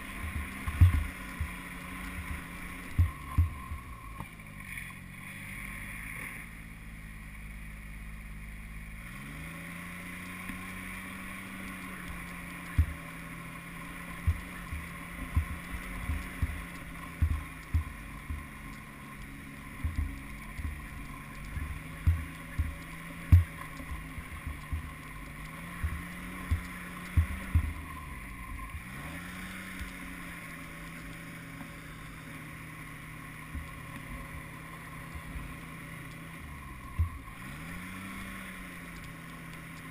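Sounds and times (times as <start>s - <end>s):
snowmobile engine running: 0.0s - 39.9s
short low thumps: 0.2s - 1.6s, 2.2s - 4.0s, 14.2s - 18.8s, 19.6s - 28.0s.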